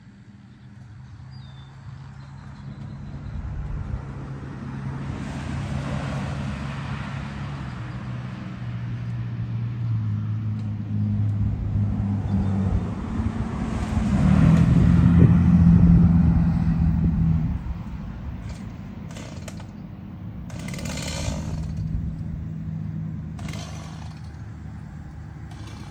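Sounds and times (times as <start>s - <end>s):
engine running: 7.8s - 25.9s.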